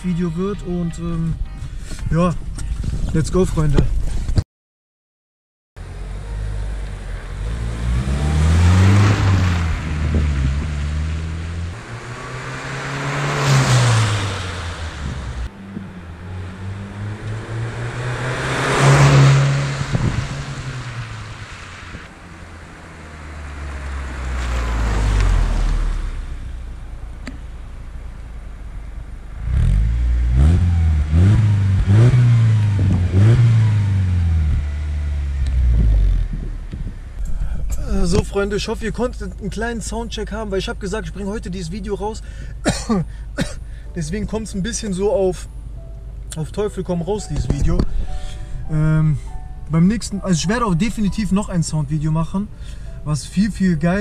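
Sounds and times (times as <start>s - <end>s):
car engine revving: 5.8s - 41.9s.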